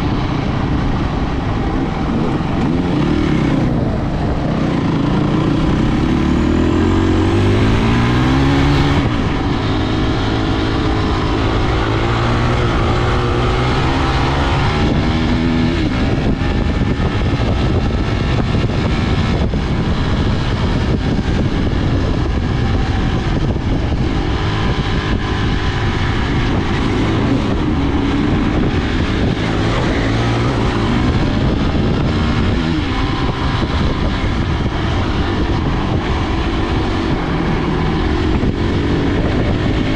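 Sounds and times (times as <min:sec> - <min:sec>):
rushing wind-like noise: 0:00.0 - 0:39.9.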